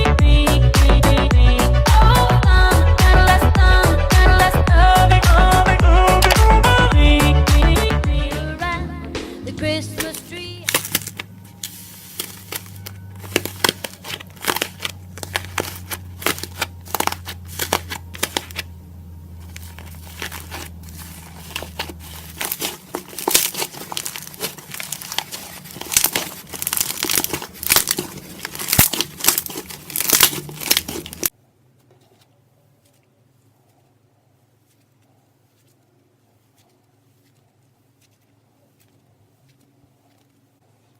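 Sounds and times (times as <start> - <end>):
slime squished by hand crackling: 10.0 - 18.8, 19.4 - 31.3.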